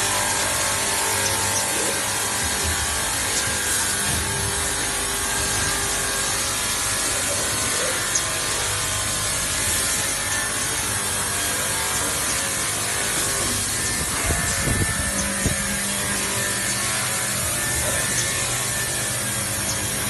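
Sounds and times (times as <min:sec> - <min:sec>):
machine hum: 0:00.0 - 0:20.0.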